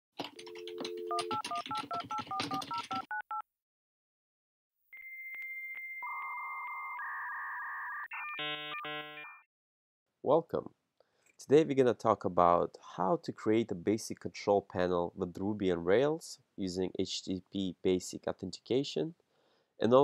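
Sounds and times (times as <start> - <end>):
telephone dial tone: 0.3 - 3.4.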